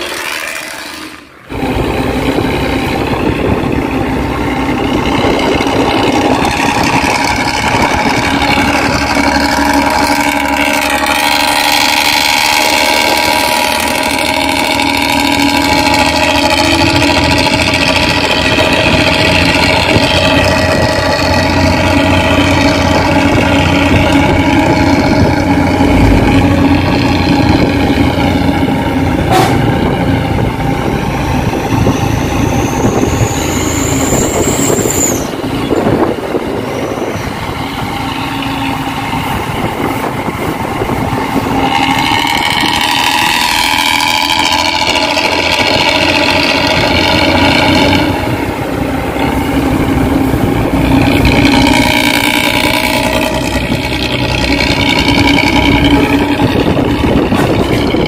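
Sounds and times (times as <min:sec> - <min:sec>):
bus engine with snoring exhaust: 0:00.0 - 0:58.0
high whistle: 0:31.8 - 0:35.4.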